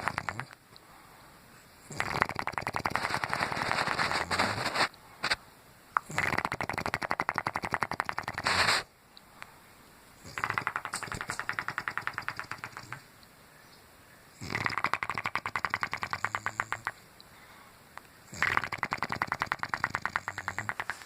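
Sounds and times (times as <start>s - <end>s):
snoring with lips flapping: 0.0s - 0.6s, 1.9s - 4.9s, 6.0s - 8.9s, 10.2s - 13.1s, 14.4s - 17.0s, 18.3s - 21.0s.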